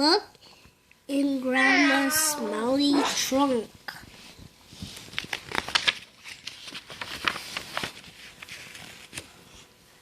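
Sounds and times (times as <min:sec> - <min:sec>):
rustling: 0:04.3 - 0:09.4.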